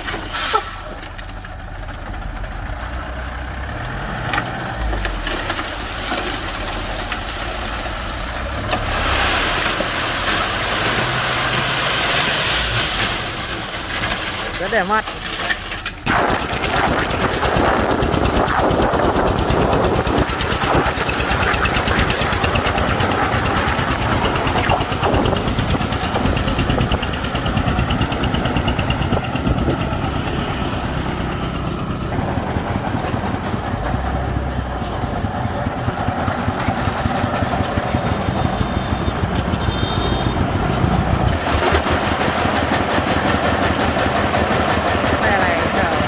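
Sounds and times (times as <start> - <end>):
vehicle engine pulsing: 15.8 - 46.0.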